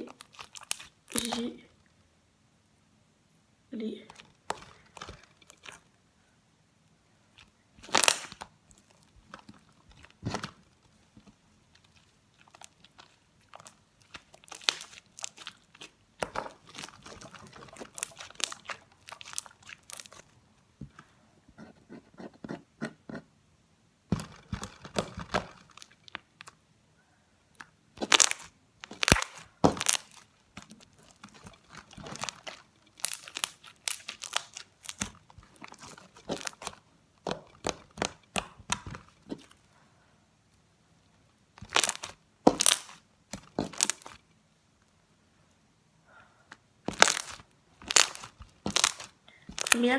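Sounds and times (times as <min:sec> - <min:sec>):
slime crackling and popping: 0:00.0 - 0:01.6, 0:04.1 - 0:06.0, 0:07.3 - 0:20.5, 0:24.1 - 0:26.6, 0:27.5 - 0:39.7, 0:41.3 - 0:44.3, 0:46.8 - 0:49.9.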